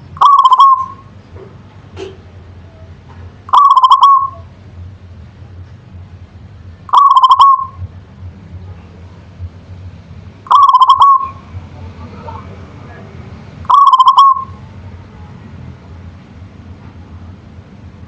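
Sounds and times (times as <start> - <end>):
dove cooing: 0.2 - 1.1, 3.5 - 4.5, 6.9 - 7.8, 10.5 - 11.4, 13.7 - 14.6.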